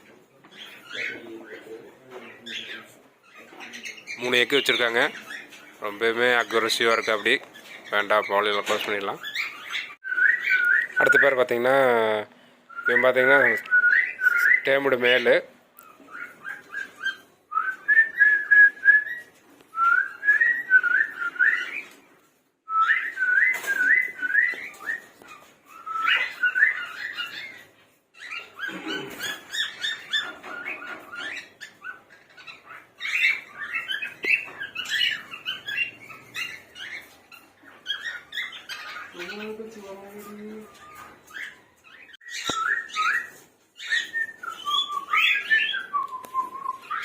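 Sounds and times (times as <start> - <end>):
cockatiel whistling and chirping: 9.2 - 11.4, 12.7 - 14.8, 15.8 - 22.0, 22.7 - 39.2, 40.8 - 47.0.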